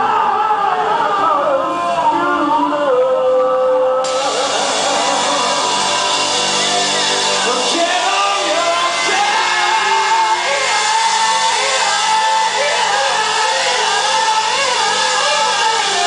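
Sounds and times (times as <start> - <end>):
electric guitar bending notes: 4.0 - 16.0
bass and drums: 4.1 - 16.0.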